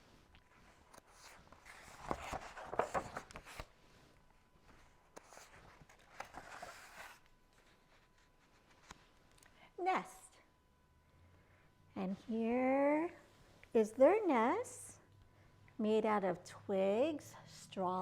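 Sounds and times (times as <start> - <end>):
paper rustling: 0.5 - 3.7, 4.7 - 9.1.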